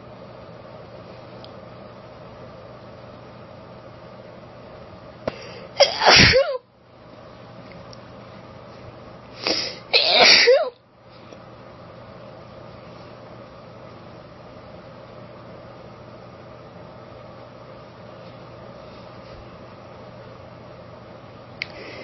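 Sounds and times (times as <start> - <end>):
woman sneezing: 5.8 - 6.6, 9.4 - 10.8.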